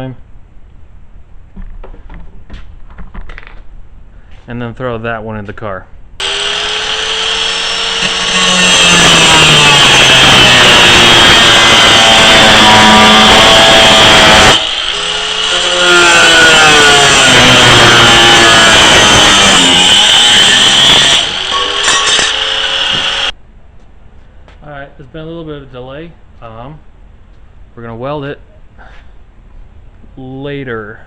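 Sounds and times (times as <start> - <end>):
angle grinder cutting steel: 6.2 - 23.3.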